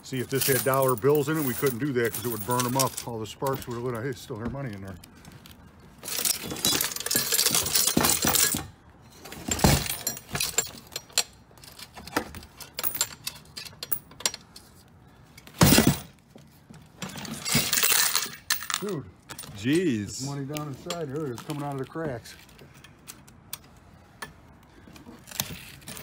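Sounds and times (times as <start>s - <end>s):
coins clinking and rattling: 0.1s - 4.1s, 6.0s - 8.7s, 9.4s - 14.6s, 17.2s - 20.0s.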